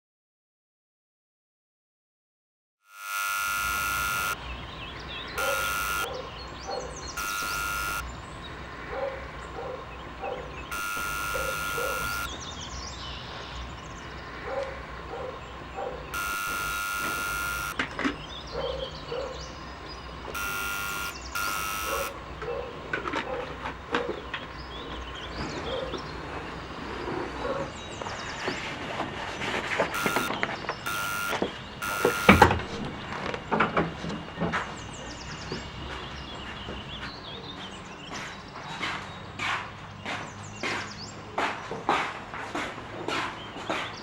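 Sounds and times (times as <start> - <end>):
electronic buzzer bursts: 2.9 - 4.5, 5.3 - 6.2, 7.1 - 8.1, 10.7 - 12.4, 16.1 - 17.8, 19.6 - 22.2, 29.9 - 32.8.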